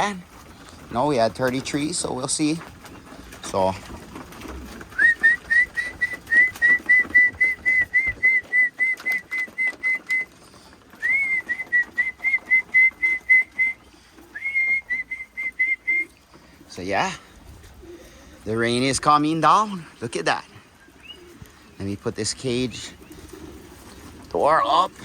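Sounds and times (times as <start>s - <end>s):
person whistling short notes: 5.0s - 10.3s, 11.0s - 13.8s, 14.4s - 16.1s.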